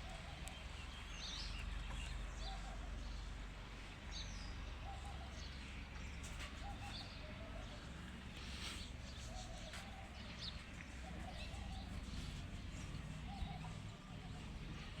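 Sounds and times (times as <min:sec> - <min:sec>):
bird cooing: 0:00.0 - 0:00.7, 0:02.4 - 0:03.0, 0:04.8 - 0:15.0.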